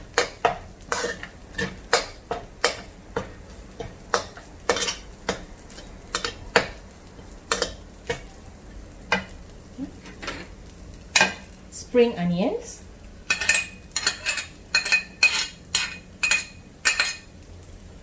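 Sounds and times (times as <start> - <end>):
faint sizzle: 0.0 - 18.0
spatula scraping and clinking on pan: 0.1 - 8.3, 11.1 - 11.5, 13.3 - 17.3.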